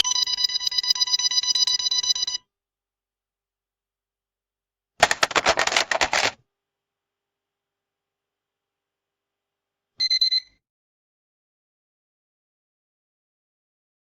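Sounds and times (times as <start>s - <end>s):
fast sharp clicks: 5.0s - 6.4s.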